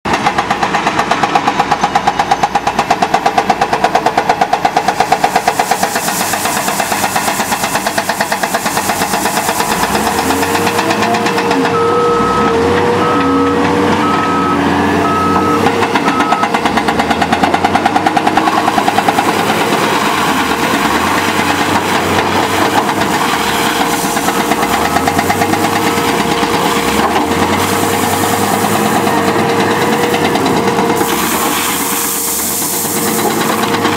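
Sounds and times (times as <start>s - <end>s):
diesel construction machine engines: 0.1s - 33.9s
reversing alarm beeps: 9.6s - 16.7s, 22.7s - 32.6s.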